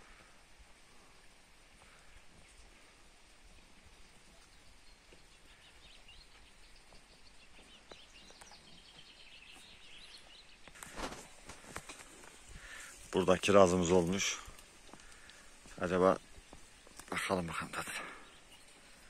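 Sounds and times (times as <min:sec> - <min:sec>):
faint birdsong: 0:00.0 - 0:19.0
quiet outdoor hush: 0:00.0 - 0:19.0
brief rustle: 0:10.7 - 0:12.9.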